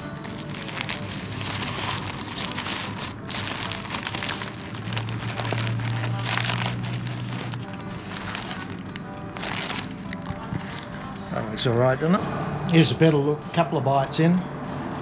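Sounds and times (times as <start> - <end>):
paper wrapping crinkling: 0.0 - 11.2.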